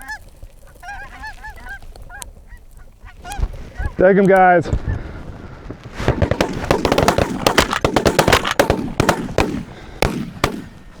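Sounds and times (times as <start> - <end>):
shotguns firing volley: 5.0 - 11.0.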